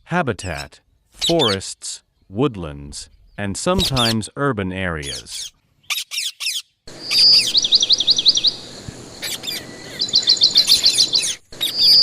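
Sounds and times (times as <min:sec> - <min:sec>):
bird song whistles: 0:05.9 - 0:08.6, 0:09.2 - 0:12.0.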